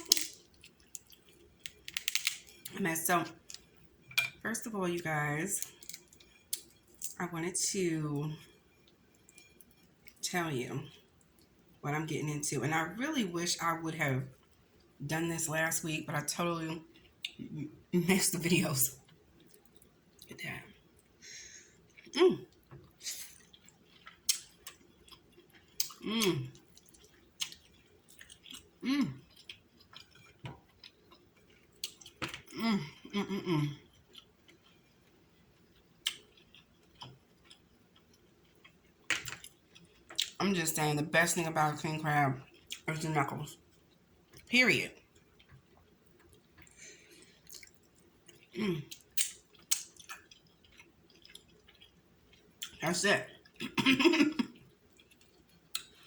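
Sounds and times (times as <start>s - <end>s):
mouth clicks and wet smacking: 21.9s - 25.2s, 36.0s - 37.2s, 47.4s - 52.8s, 53.4s - 56.0s
close chewing: 21.9s - 32.2s, 36.0s - 37.6s, 45.3s - 52.8s, 54.5s - 56.0s
person humming mm: 32.6s - 33.8s
mouth clicks and smacks: 48.9s - 50.4s.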